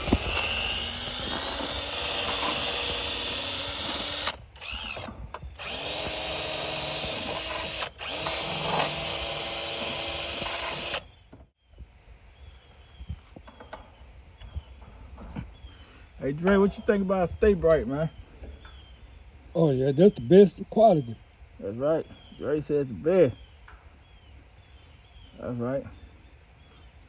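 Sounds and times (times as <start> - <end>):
power drill running: 0.0 - 11.2.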